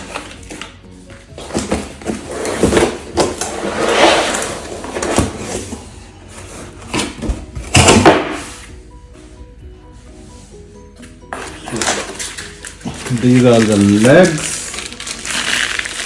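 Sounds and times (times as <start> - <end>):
packaging rustling and scraping: 0.0 - 7.4, 11.3 - 16.0.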